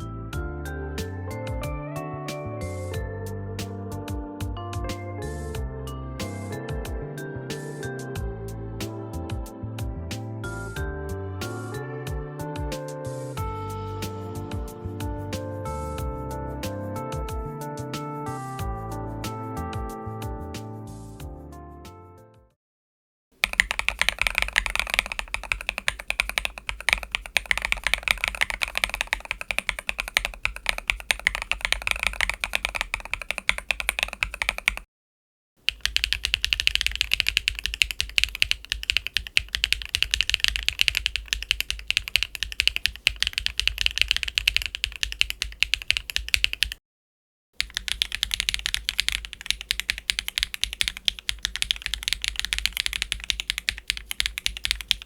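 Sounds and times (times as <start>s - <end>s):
mechanical keyboard typing: 23.4s - 34.9s, 35.7s - 46.8s, 47.6s - 55.0s.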